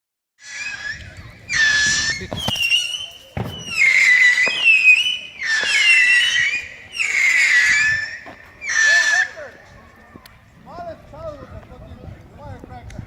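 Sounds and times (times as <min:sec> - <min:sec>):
whistling fireworks: 0:00.4 - 0:09.5
firework pops: 0:01.6 - 0:06.6.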